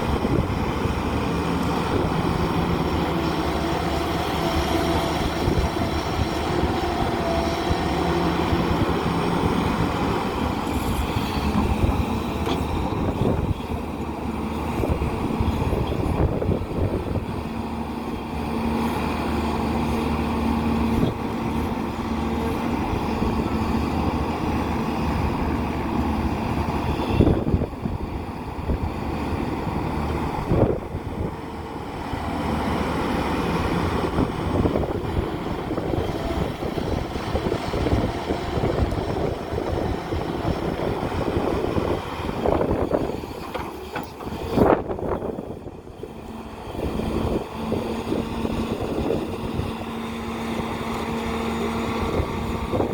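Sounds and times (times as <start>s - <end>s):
diesel engine running: 0.0s - 52.9s.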